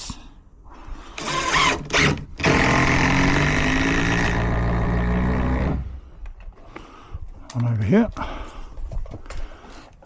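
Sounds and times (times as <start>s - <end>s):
power drill driving a screw: 1.2s - 5.8s.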